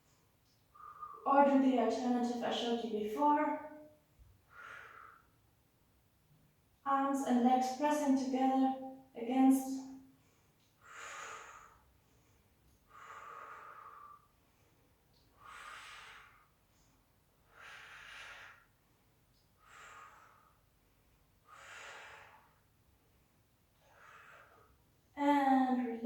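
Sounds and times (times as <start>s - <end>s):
woman breathing slowly: 0.0s - 1.3s, 4.4s - 5.5s, 10.0s - 25.1s.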